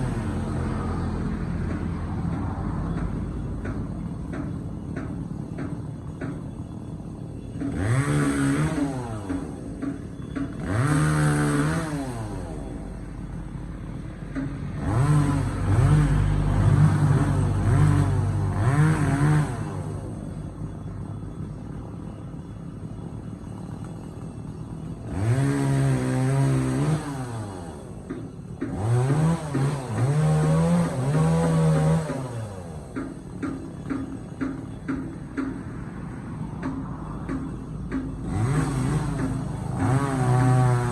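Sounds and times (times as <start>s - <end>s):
chainsaw revving cutting wood: 7.6s - 13.3s, 14.3s - 20.1s, 25.0s - 35.6s, 36.6s - 40.9s.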